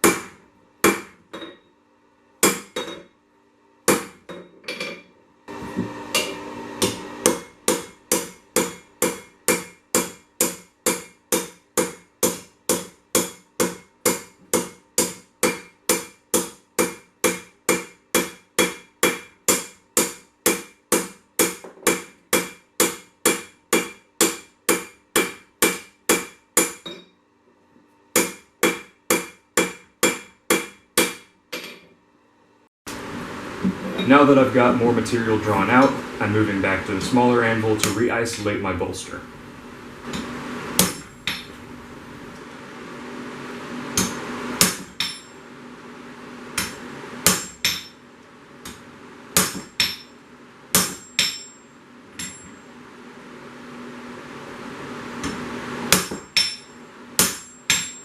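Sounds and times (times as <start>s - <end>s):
hammer striking steel on anvil: 2.4s - 3.1s, 3.9s - 5.1s, 6.1s - 27.1s, 28.2s - 31.8s, 40.1s - 41.6s, 44.0s - 45.4s, 46.6s - 48.0s, 49.4s - 51.6s, 52.2s - 52.6s, 55.9s - 58.0s
burst of steady noise: 32.9s - 42.4s.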